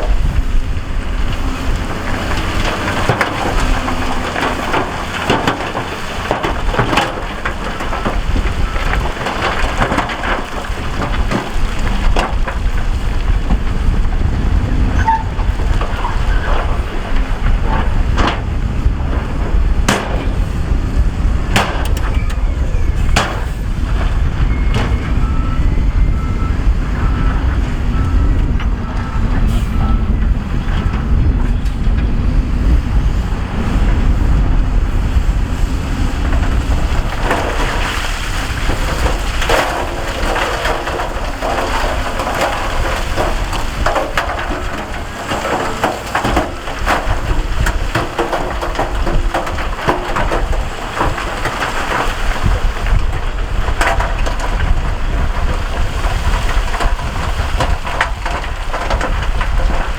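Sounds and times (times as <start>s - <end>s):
heavy earthmoving machinery running: 0.0s - 59.9s
rock clanking: 0.0s - 59.9s.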